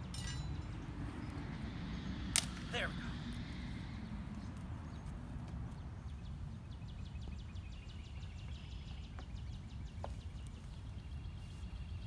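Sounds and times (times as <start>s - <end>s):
steady low rumble: 0.0s - 8.7s.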